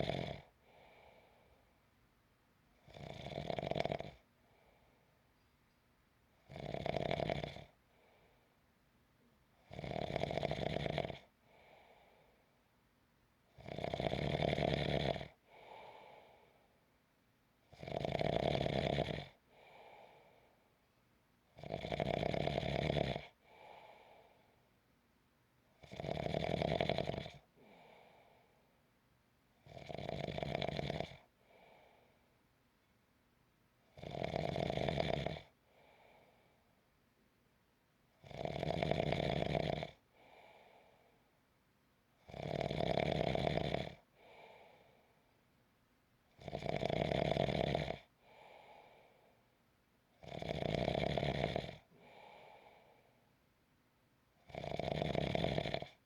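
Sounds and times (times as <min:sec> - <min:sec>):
person snoring: 0:00.0 - 0:00.5, 0:02.8 - 0:04.2, 0:06.5 - 0:07.7, 0:13.6 - 0:15.4, 0:17.8 - 0:19.4, 0:25.8 - 0:27.8, 0:29.7 - 0:31.3, 0:38.3 - 0:40.0, 0:42.3 - 0:44.0, 0:46.4 - 0:48.1, 0:50.2 - 0:52.8, 0:54.5 - 0:56.0.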